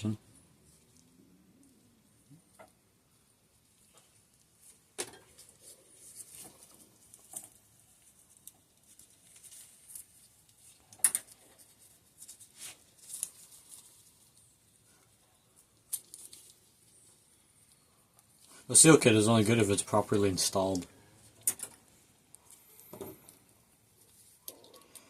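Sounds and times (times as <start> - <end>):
small parts and tools clicking: 7.0 - 12.4, 21.3 - 25.0.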